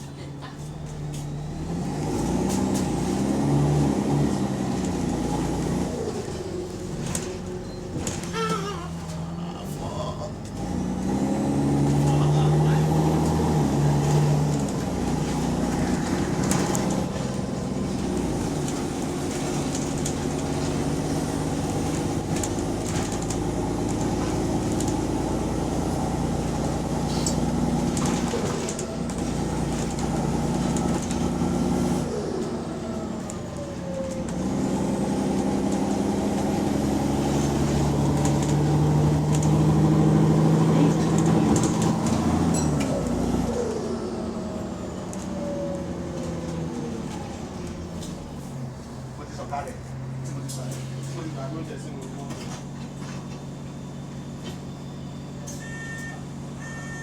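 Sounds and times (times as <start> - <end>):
bus diesel engine with exhaust leak: 0.0 - 57.0.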